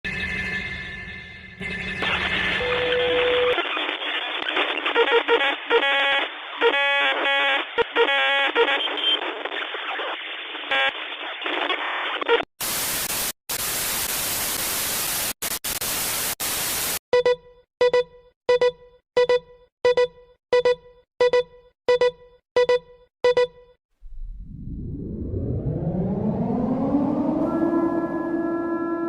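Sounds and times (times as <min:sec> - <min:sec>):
muffled radio static: 0:01.6 - 0:07.9, 0:08.6 - 0:16.9
loud hiss static: 0:09.3 - 0:17.0
short identical beeps: 0:17.2 - 0:23.8.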